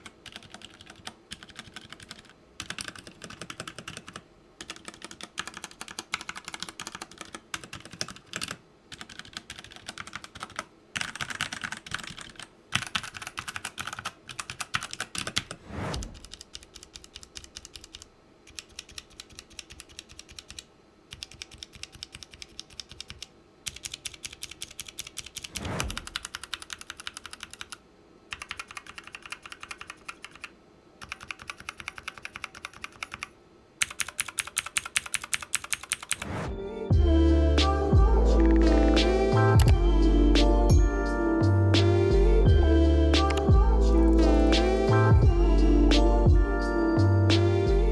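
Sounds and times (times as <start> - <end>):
mechanical keyboard clacking: 0.0 - 15.6, 16.2 - 36.3
heavy keystroke: 21.2 - 36.4, 39.5 - 39.9, 43.2 - 45.4.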